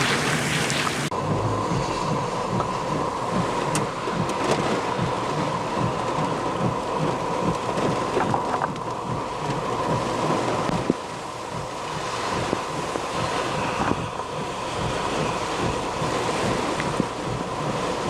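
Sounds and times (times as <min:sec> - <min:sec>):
steady rain: 0:00.0 - 0:18.0
wind: 0:00.0 - 0:18.0.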